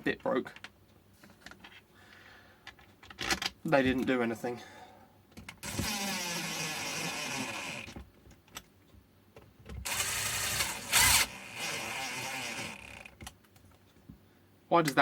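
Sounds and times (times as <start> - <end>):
impact driver driving screws: 5.6 - 8.0, 9.9 - 13.1.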